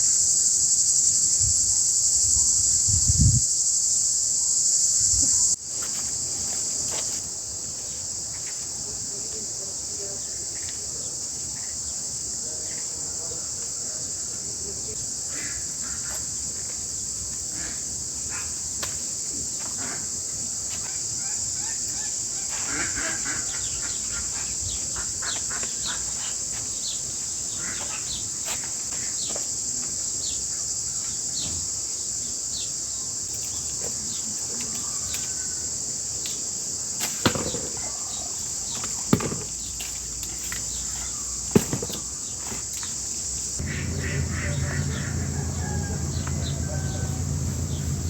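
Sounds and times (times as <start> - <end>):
high insect buzz: 0.0 - 8.6
low hum: 43.6 - 48.0.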